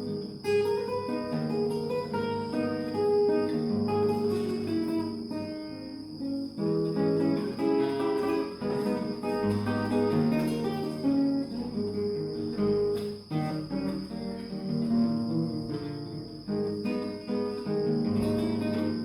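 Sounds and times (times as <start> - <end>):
high-pitched insect chirring: 0.0 - 19.0
solo spanish guitar: 0.0 - 19.0.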